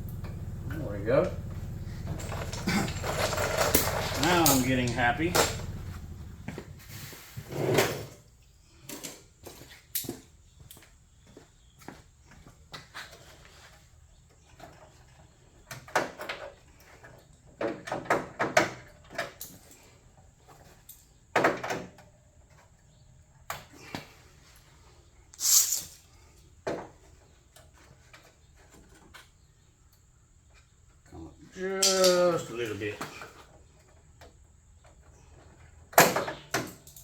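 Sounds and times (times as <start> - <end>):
brief hiss: 25.4 - 26.0.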